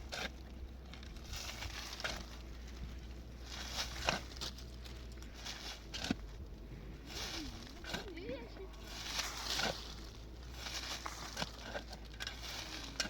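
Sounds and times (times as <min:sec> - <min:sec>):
steady low hum: 0:00.0 - 0:13.0
scraping and knocking: 0:07.1 - 0:13.0.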